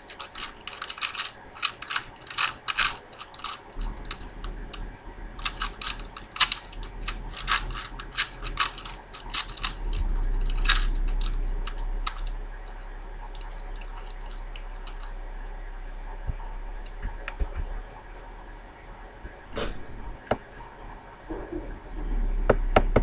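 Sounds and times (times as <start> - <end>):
puzzle cube clicking: 0.0 - 4.8, 5.4 - 15.1
low steady hum: 0.0 - 23.0.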